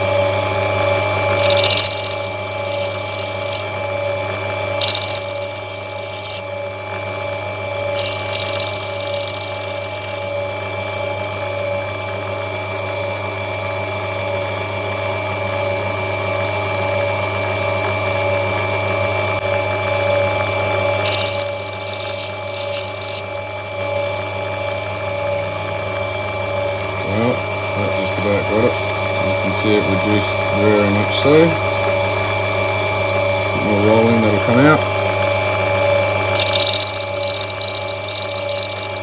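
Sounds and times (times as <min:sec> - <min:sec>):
machine motor humming: 0:01.3 - 0:04.0, 0:04.8 - 0:06.4, 0:08.0 - 0:10.4
stone grinding on wheel: 0:01.4 - 0:03.8, 0:04.8 - 0:06.4, 0:08.0 - 0:10.4, 0:21.0 - 0:23.4, 0:36.4 - 0:39.0.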